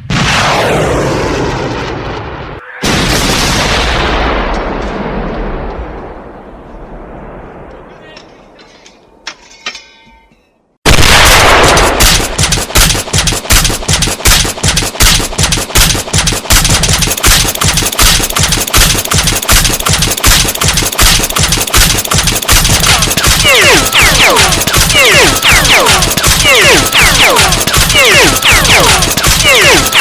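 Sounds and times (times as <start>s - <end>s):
automatic machine-gun fire: 10.9s - 30.0s.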